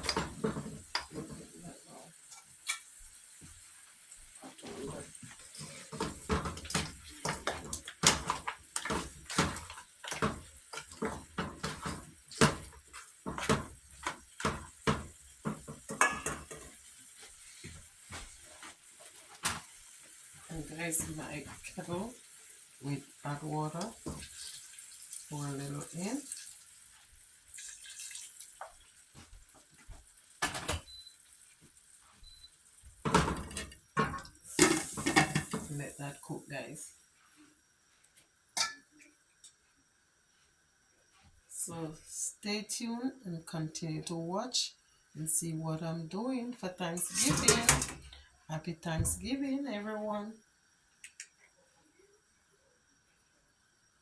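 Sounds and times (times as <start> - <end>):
metal spoon scraping a pot: 47.0 - 48.0.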